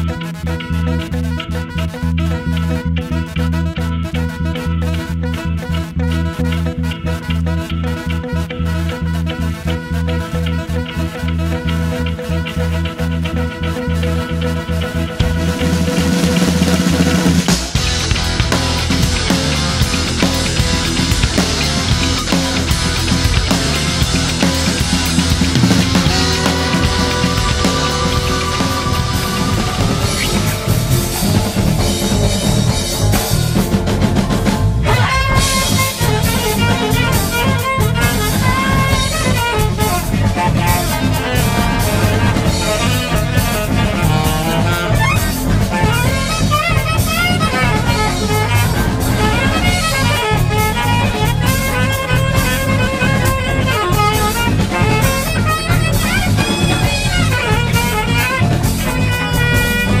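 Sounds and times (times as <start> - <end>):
steady drum beat: 13.1 - 60.0
wavering melodic lead: 13.4 - 60.0.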